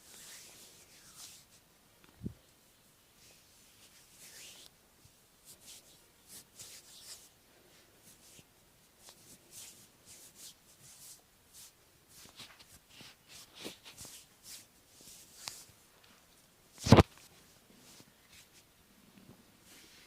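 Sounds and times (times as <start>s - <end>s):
hands rubbing over skin: 0.1s - 1.6s, 3.3s - 4.7s, 5.4s - 7.3s, 8.1s - 15.7s.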